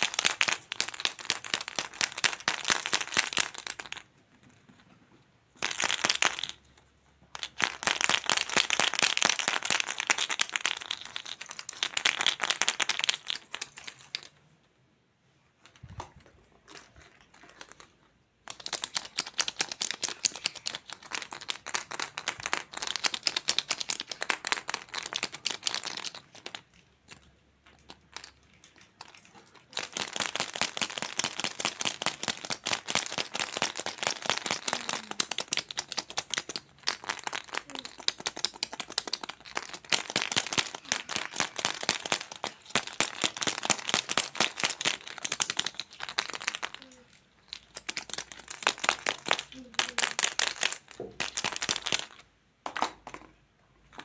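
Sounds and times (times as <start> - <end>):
plastic crinkling: 15.6 - 52.2.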